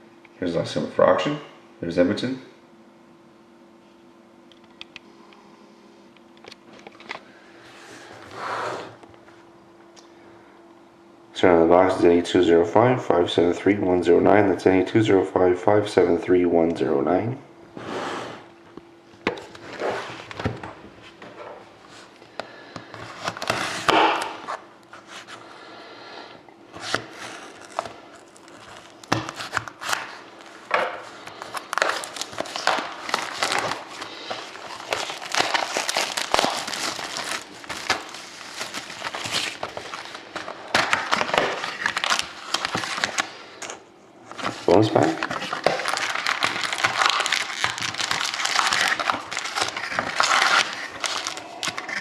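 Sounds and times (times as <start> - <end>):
plastic wrapping crinkling: 26.7 - 43.4, 44.3 - 52.0.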